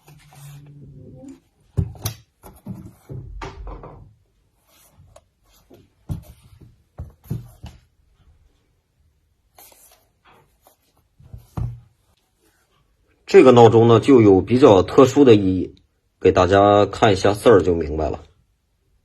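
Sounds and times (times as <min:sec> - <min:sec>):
rustling and shuffling: 0:00.0 - 0:13.3.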